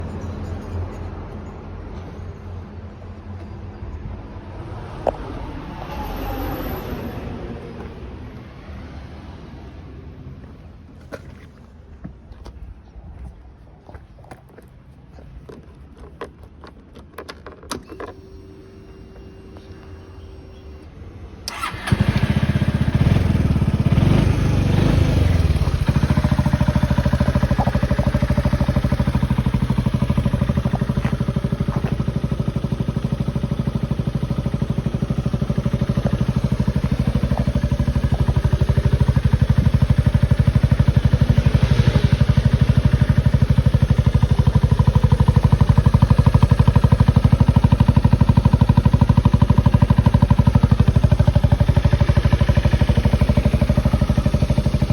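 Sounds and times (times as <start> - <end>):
scooter engine starting and idling: 15.5 - 54.9.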